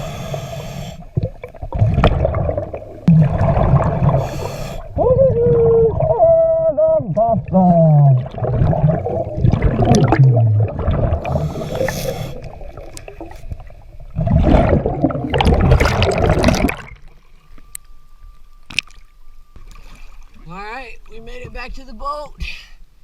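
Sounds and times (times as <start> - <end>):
regulator inhale hiss: 0.0 - 1.2, 4.1 - 5.0, 11.2 - 12.6
exhaled bubbles gurgling: 0.0 - 17.2.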